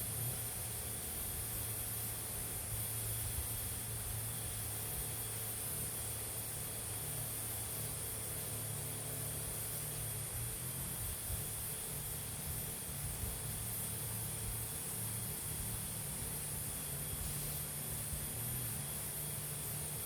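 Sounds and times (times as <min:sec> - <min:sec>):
steady low hum: 0:08.3 - 0:20.0
sprayer hissing: 0:16.1 - 0:19.8.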